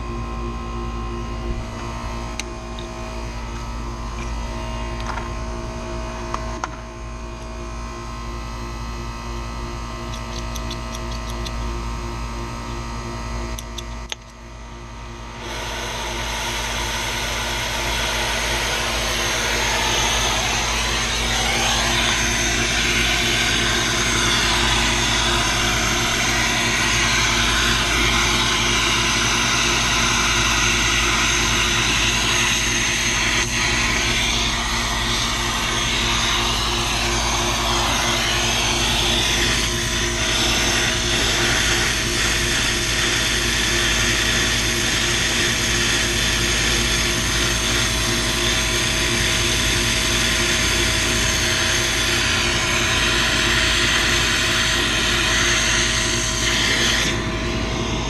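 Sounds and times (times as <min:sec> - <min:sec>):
steady machine hum: 0:00.0 - 0:58.0
whooshing machine noise: 0:15.2 - 0:58.0.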